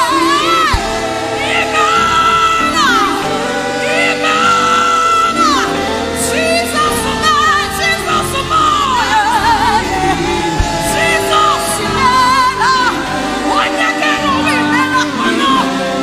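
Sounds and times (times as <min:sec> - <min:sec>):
person singing long held notes: 0:00.0 - 0:16.0
sustained instrumental backing: 0:00.0 - 0:16.0.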